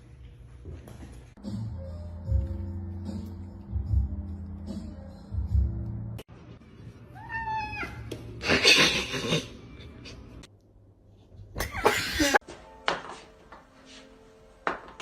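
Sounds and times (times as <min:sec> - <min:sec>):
cat meowing: 0:07.2 - 0:08.1.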